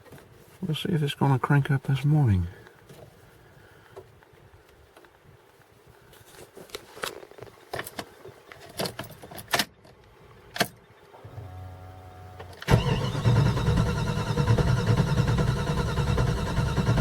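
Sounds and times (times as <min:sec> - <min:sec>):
engine starter cranking: 0:12.4 - 0:17.0.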